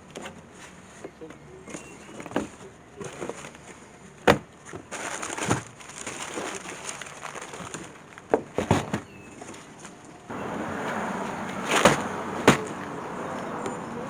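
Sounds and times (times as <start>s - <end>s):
light handling noise: 0.0s - 13.8s
wood scraping: 10.3s - 13.8s.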